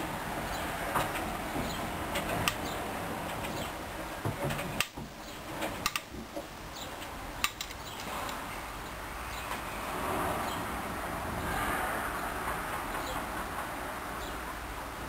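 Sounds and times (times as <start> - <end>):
sharp clicks and knocks: 0.8 - 8.4.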